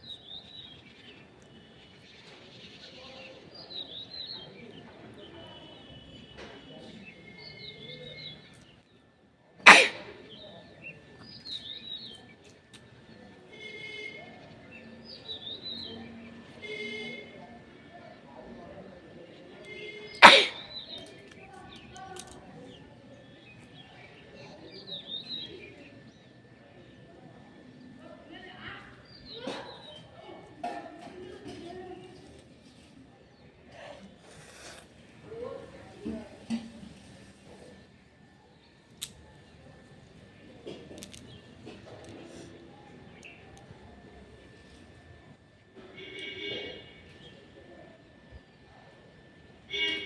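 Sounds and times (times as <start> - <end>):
faint outdoor background noise: 0.0 - 50.0
person sneezing: 9.7 - 10.2, 20.2 - 20.8
birds chirping: 38.4 - 44.5.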